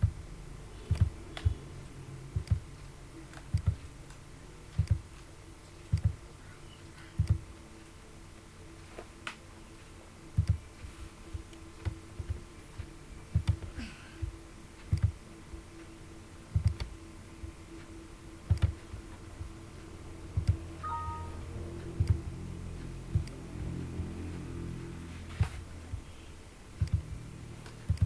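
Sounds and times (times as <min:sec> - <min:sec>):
faint steady hum: 0:00.0 - 0:28.0
computer mouse clicks: 0:16.5 - 0:16.9, 0:18.5 - 0:18.9, 0:26.8 - 0:28.0.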